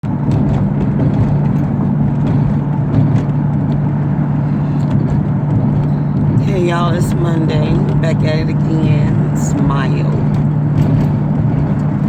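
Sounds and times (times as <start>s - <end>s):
car interior hum: 0.0s - 12.0s
road rumble: 0.0s - 12.0s.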